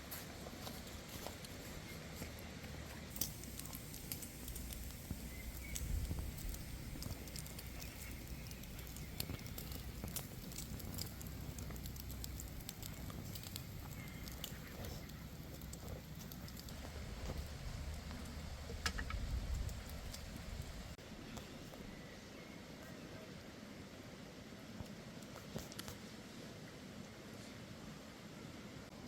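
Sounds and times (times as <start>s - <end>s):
wood fire crackling: 0.0s - 21.5s
low steady rumble: 2.8s - 21.0s
sharp pops: 3.1s - 16.9s.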